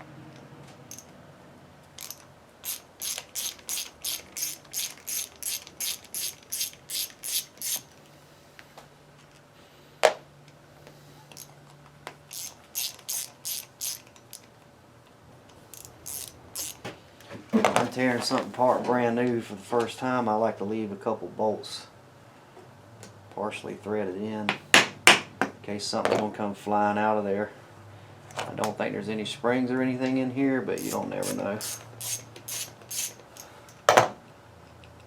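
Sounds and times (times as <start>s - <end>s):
ratchet wrench clicking: 0.9s - 1.1s, 2.0s - 8.0s, 11.3s - 11.5s, 12.3s - 14.5s, 15.7s - 16.8s, 30.8s - 33.5s.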